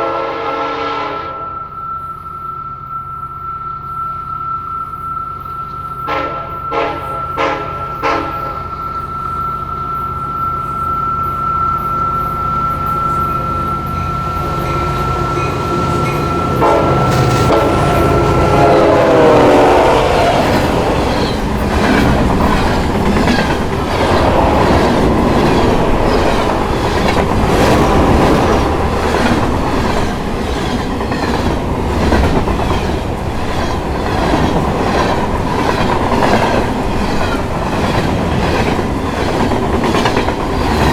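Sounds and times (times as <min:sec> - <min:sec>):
train horn: 0:00.0 - 0:02.9, 0:05.9 - 0:23.0
steady high tone: 0:00.0 - 0:40.5
train passing: 0:00.0 - 0:40.9
wheels clacking over rail joints: 0:12.2 - 0:40.9.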